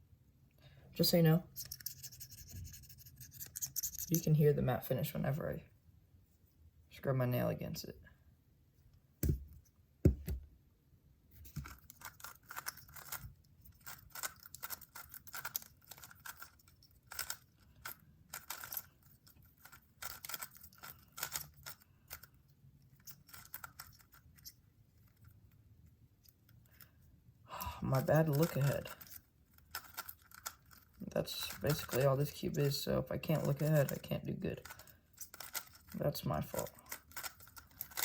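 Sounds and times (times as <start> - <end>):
puzzle cube turning clicks: 11.6 - 22.3, 23.0 - 24.6, 34.6 - 35.9, 36.7 - 38.0.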